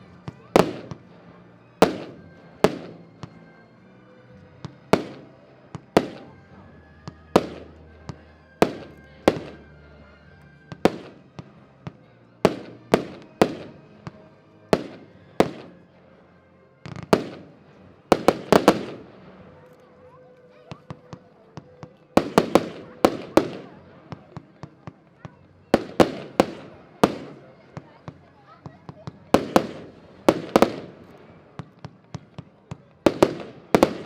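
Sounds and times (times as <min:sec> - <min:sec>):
firework bangs with echo: 0:01.8 - 0:03.3, 0:04.6 - 0:06.4, 0:07.1 - 0:09.7, 0:10.7 - 0:15.8, 0:16.9 - 0:17.5, 0:18.1 - 0:19.2, 0:22.2 - 0:24.9, 0:25.7 - 0:27.9, 0:28.6 - 0:34.0.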